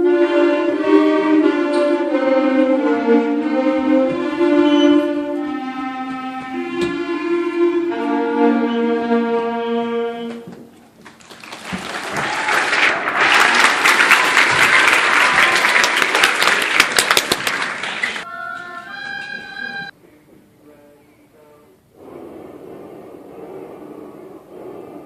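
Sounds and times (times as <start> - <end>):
instrument playing sustained notes: 0.0 - 10.4
instrumental ensemble held notes: 0.0 - 10.5
audience applauding: 11.0 - 18.3.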